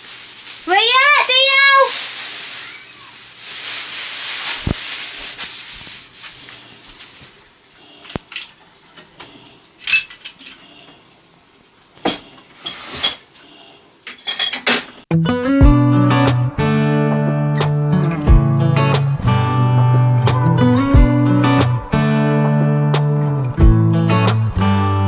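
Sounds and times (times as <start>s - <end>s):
soft rustling hiss: 0.0s - 13.1s.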